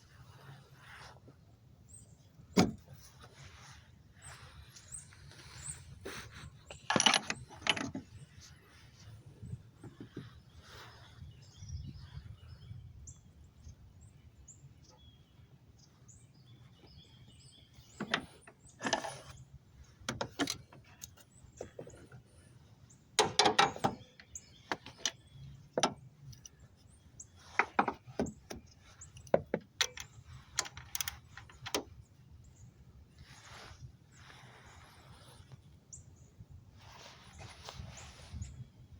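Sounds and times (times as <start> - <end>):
birds chirping faintly: 0.0 - 38.9
metallic clanks of hand tools: 6.7 - 8.0, 18.0 - 19.3, 23.2 - 24.0.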